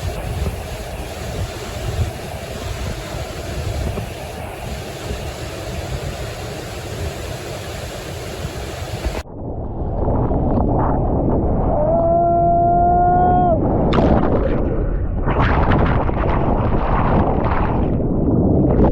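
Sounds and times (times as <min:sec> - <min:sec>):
ocean surf: 0:00.0 - 0:09.3
heavy low rumble: 0:00.0 - 0:18.9
wind on microphone: 0:00.0 - 0:18.9.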